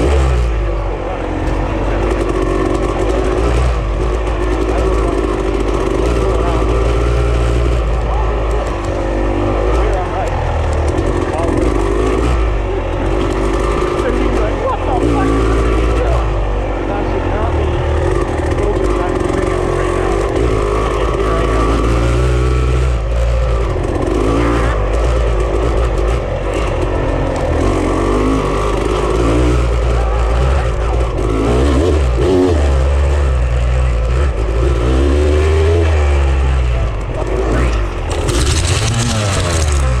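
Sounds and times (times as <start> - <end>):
off-road vehicle engine revving: 0.0 - 40.0.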